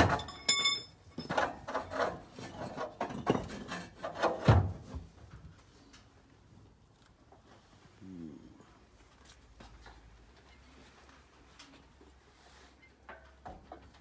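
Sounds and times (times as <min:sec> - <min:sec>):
metal parts knocking and scraping: 0:00.0 - 0:04.6
short metallic ring: 0:00.1 - 0:01.3.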